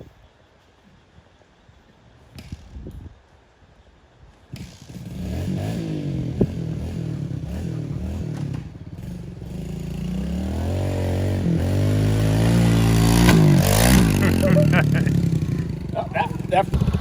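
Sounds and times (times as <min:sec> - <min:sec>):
pit bike engine revving: 0:04.6 - 0:17.0.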